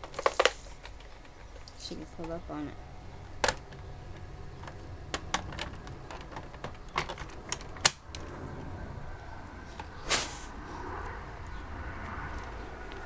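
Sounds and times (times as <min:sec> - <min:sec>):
object clicking and knocking: 0:03.4 - 0:08.2.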